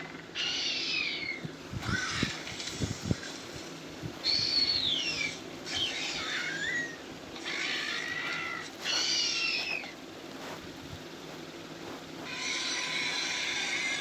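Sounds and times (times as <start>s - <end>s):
dinosaur screeching calls: 0.1s - 3.3s, 4.2s - 10.0s, 12.2s - 14.0s.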